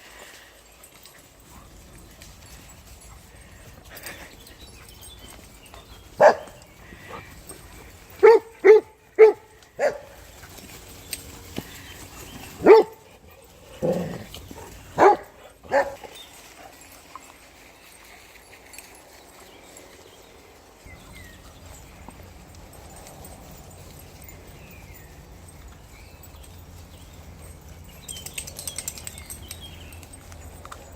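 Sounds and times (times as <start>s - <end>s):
dog barking: 6.2s - 6.6s, 8.2s - 10.1s, 12.6s - 13.0s, 15.0s - 16.1s.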